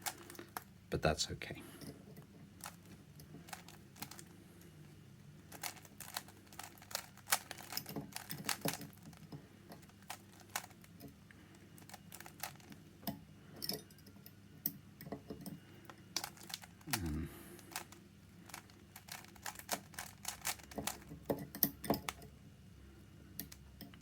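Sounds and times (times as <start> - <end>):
puzzle cube clicking: 18.5 - 21.0.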